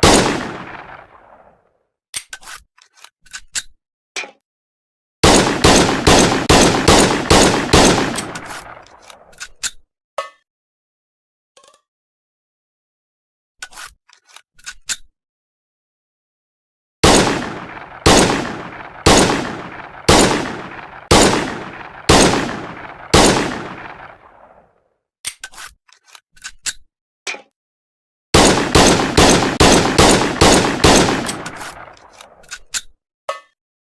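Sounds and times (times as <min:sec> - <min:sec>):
pistol shots: 0:00.0 - 0:01.5, 0:05.2 - 0:09.0, 0:17.0 - 0:24.6, 0:28.4 - 0:32.1.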